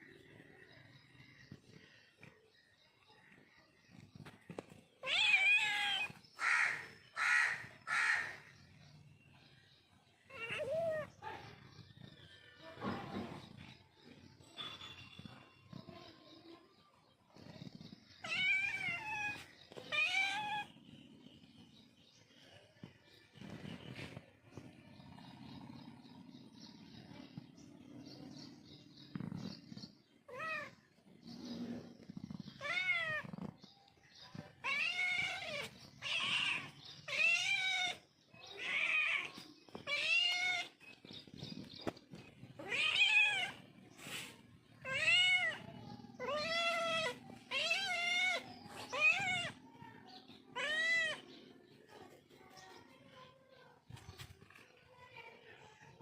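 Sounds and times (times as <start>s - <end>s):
cat meowing: 44.8s - 49.6s.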